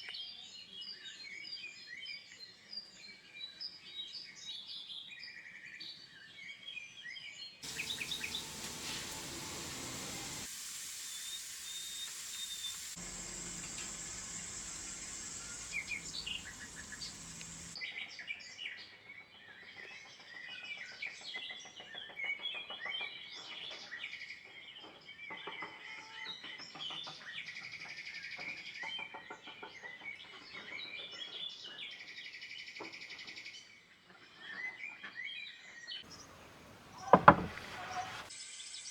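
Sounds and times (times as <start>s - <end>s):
songbirds chirping: 7.6s - 10.5s, 11.1s - 17.8s, 36.1s - 38.3s
steady hiss: 7.6s - 17.8s, 36.1s - 38.3s.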